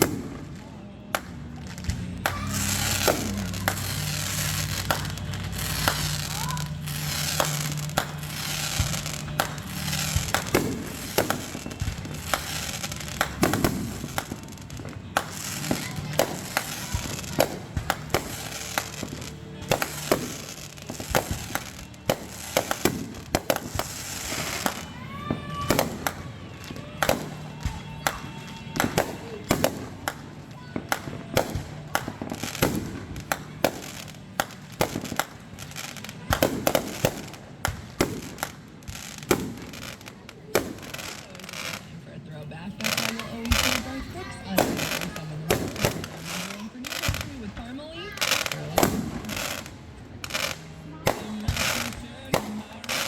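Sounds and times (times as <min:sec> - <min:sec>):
falling firework whistle: 0:00.0 - 0:34.0
fireworks bangs: 0:00.0 - 0:53.0
fireworks crackling: 0:00.0 - 0:53.0.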